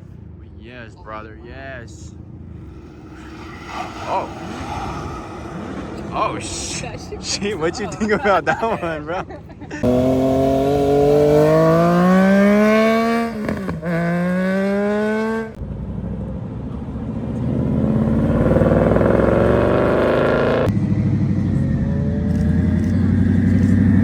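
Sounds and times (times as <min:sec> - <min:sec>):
rough engine rumble: 0:00.0 - 0:08.1, 0:15.6 - 0:24.0
car engine accelerating: 0:02.4 - 0:07.7, 0:09.8 - 0:24.0.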